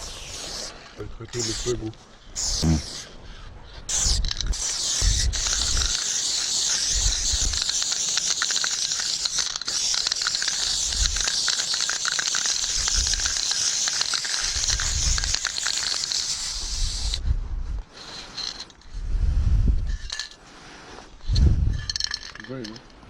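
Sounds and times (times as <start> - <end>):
spray can hissing: 0.0 - 1.8, 2.4 - 3.1, 3.9 - 17.2, 18.0 - 18.7.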